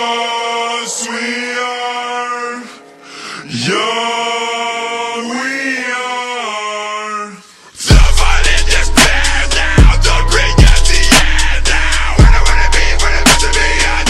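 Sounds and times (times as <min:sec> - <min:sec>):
person singing unaccompanied: 0:00.0 - 0:14.0
hip-hop beat with bass: 0:07.8 - 0:14.0.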